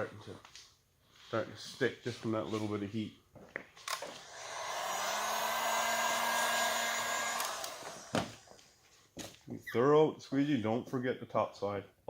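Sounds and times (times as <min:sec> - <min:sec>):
heat gun blowing air: 0:04.1 - 0:08.6.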